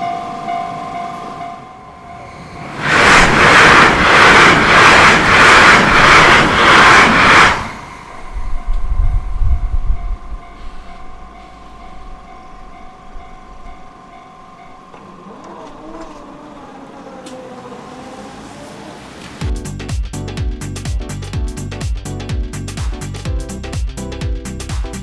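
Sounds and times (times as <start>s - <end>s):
crossing warning bell: 0.0s - 18.0s
train passing with wheel beats: 0.0s - 25.0s
low rumble of wind: 1.6s - 16.6s.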